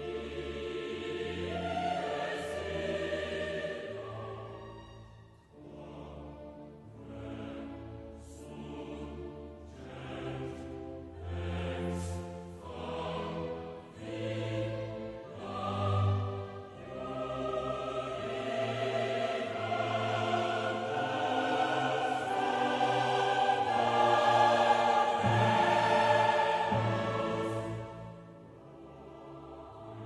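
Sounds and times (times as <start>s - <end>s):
choir voices: 0.0s - 30.0s
orchestra: 0.0s - 30.0s.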